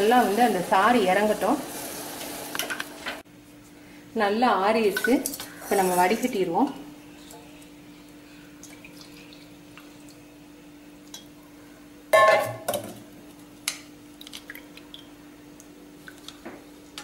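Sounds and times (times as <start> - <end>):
liquid pouring: 8.6 - 10.2
metal vessels clinking: 12.2 - 12.9.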